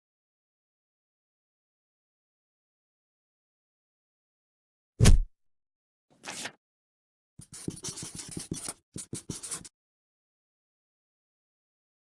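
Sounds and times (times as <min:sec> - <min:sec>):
scratchy strokes: 0:07.4 - 0:09.7.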